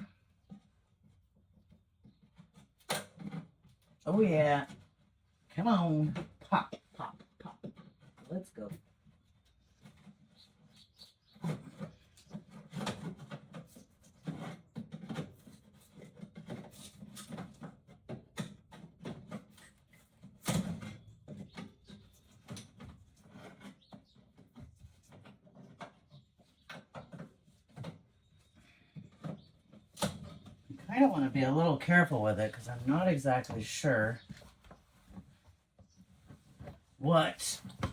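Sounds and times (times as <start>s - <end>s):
wood panel creaking and rubbing: 9.1s - 37.9s.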